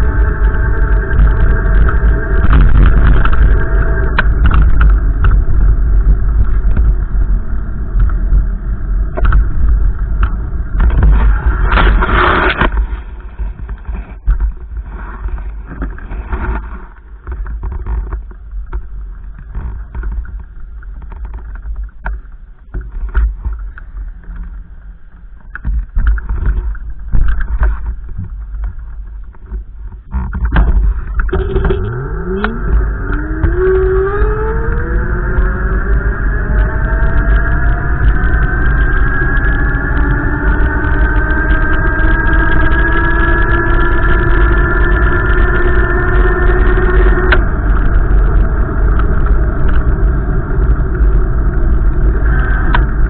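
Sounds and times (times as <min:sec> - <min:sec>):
wind buffeting microphone: 0:00.0 - 0:53.0.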